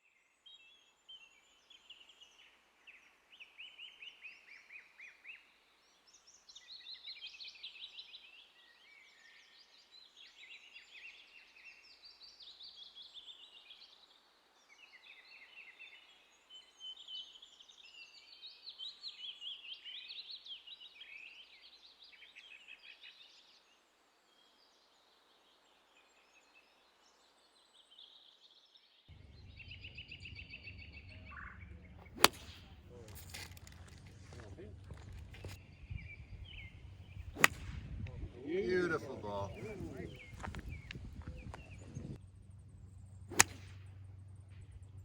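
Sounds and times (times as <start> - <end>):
songbirds singing: 0.0 - 45.0
golf club striking ball: 32.0 - 33.9, 36.5 - 38.0, 43.3 - 44.6.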